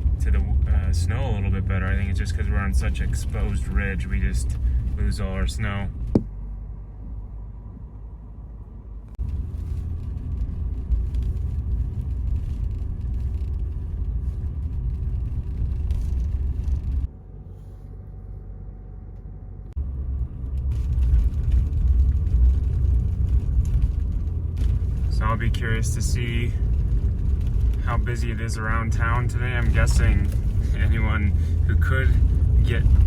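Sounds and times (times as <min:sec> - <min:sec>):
car engine and road noise: 0:00.0 - 0:33.0.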